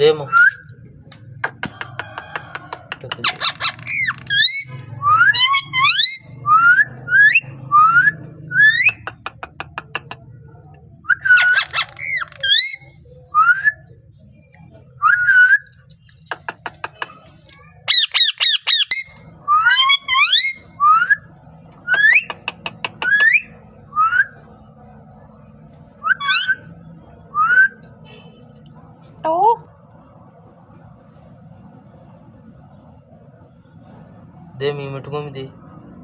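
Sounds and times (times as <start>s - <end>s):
parrot chattering calls: 1.4s - 6.3s, 11.3s - 13.0s, 16.3s - 20.7s, 21.8s - 23.6s
parrot whistled squawks: 3.3s - 9.0s, 11.1s - 12.8s, 17.9s - 21.2s, 26.0s - 26.7s
parrot clicks: 9.0s - 10.2s.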